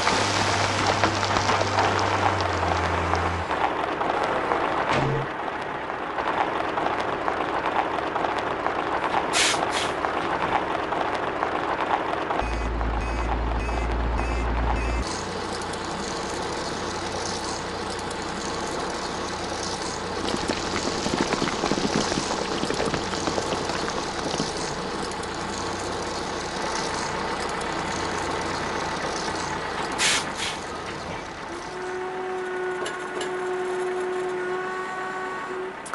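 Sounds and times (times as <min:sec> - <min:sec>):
air brake hiss: 0:09.4 - 0:10.0, 0:30.0 - 0:30.6
cartoon truck engine running: 0:12.4 - 0:34.0.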